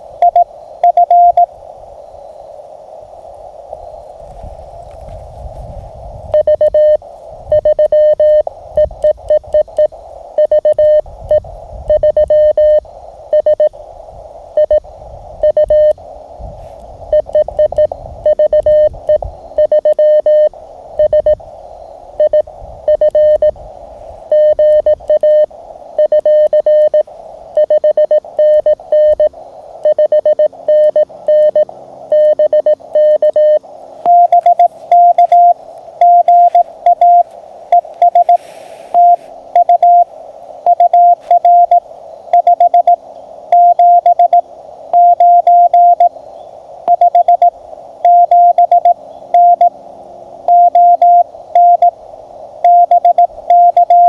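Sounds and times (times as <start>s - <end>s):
receiver hiss: 0.0s - 54.0s
morse code tone: 0.2s - 1.5s, 6.3s - 13.8s, 14.6s - 14.8s, 15.4s - 16.0s, 17.1s - 21.4s, 22.2s - 23.6s, 24.3s - 46.2s, 46.9s - 49.8s, 50.5s - 52.0s, 52.6s - 54.0s.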